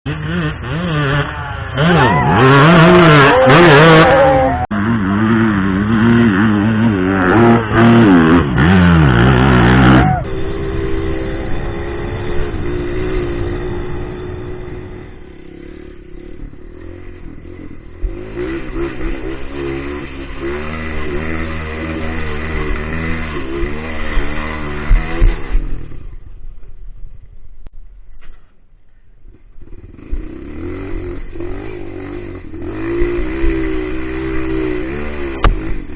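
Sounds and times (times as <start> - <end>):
trail bikes revving: 0.1 - 26.8, 29.2 - 35.9.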